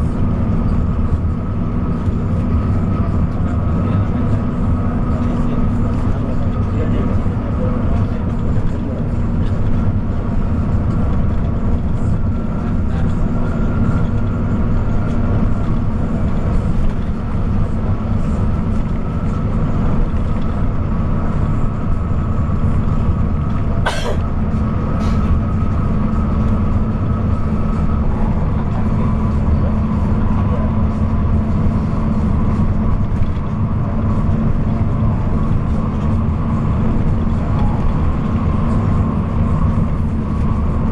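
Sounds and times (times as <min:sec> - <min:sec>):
bus engine drone: 0:00.0 - 0:40.9
road and wind noise: 0:00.0 - 0:40.9.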